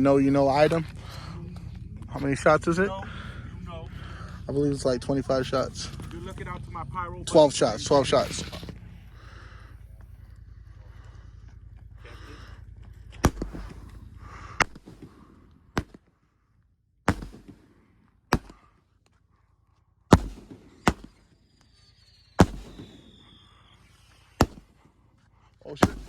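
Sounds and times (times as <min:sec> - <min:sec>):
firework cake bangs: 0:13.2 - 0:16.1, 0:17.1 - 0:18.8, 0:20.1 - 0:24.9, 0:25.8 - 0:26.0.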